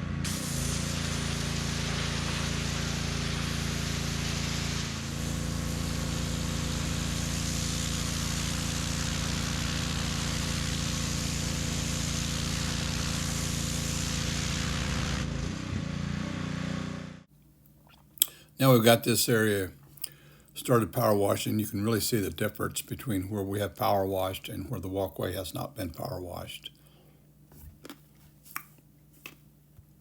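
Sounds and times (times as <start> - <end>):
high-pressure water jet hissing: 0.0 - 15.6
pressure washer motor drone: 0.0 - 17.3.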